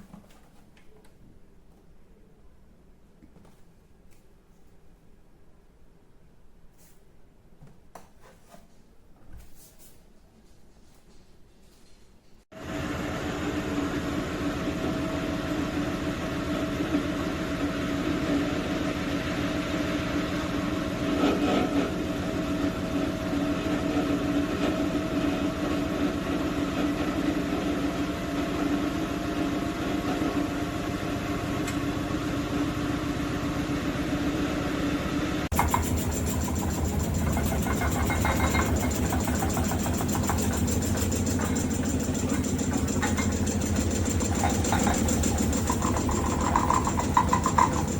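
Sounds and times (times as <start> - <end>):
washing machine humming: 12.5 - 47.9.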